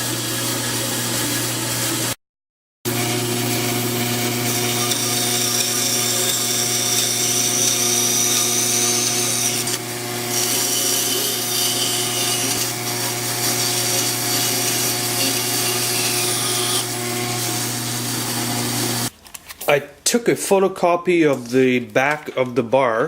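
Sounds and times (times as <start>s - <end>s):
power tool motor humming: 2.9s - 19.1s.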